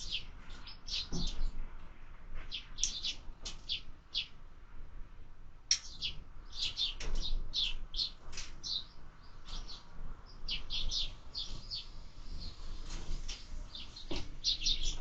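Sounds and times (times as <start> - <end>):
sparrows chirping: 0.0 - 1.6, 2.4 - 4.4, 5.7 - 15.0.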